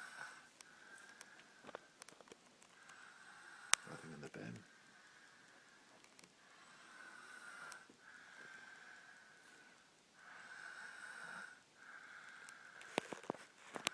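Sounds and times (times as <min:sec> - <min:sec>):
soft snoring with whistle: 0:06.5 - 0:07.9, 0:10.2 - 0:12.6.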